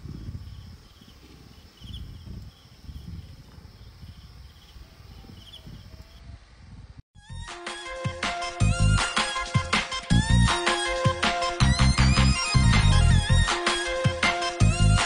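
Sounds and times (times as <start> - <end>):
music: 7.2 - 15.0.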